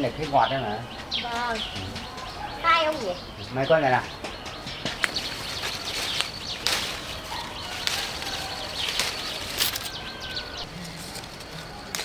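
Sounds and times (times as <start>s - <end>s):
faint bird chirps: 0.0s - 12.0s
leaves and twigs rustling and snapping: 4.4s - 12.0s.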